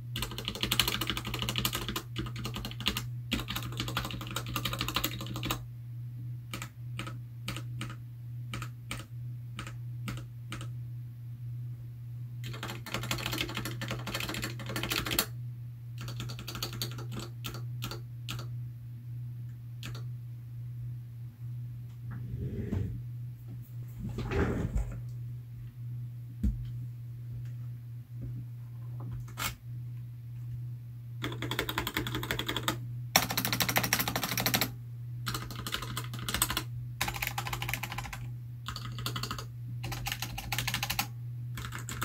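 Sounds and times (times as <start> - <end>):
steady low hum: 0.0 - 42.0
mechanical keyboard typing: 0.2 - 5.6, 6.5 - 10.7, 12.4 - 15.3, 16.0 - 18.5, 31.2 - 34.7, 35.3 - 42.0.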